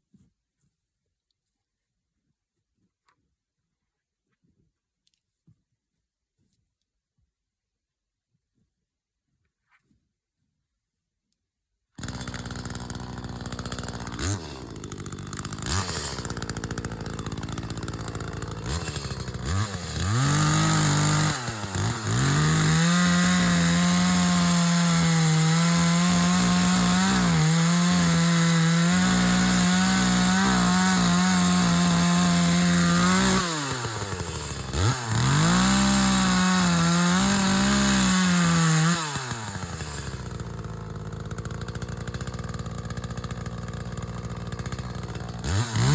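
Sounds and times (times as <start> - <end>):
chainsaw revving and idling: 12.0 - 45.9.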